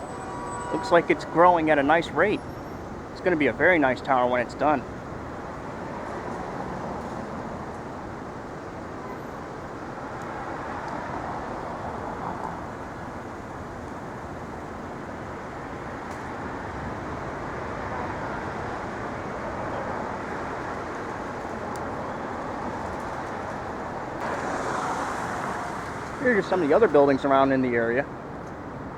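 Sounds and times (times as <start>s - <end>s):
passing cars: 0.0s - 28.9s.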